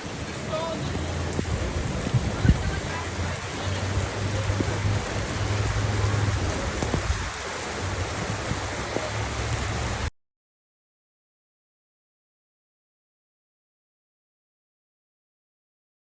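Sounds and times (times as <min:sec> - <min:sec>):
heavy rain pouring: 0:00.0 - 0:10.1.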